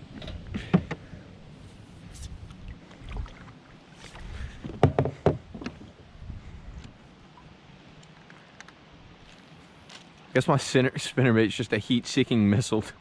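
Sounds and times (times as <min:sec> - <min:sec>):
knocks and clunks on boat: 0:00.1 - 0:01.1, 0:04.6 - 0:06.0.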